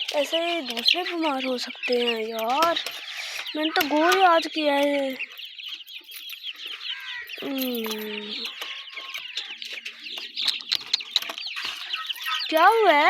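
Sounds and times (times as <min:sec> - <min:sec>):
chicks peeping: 0:00.0 - 0:13.0.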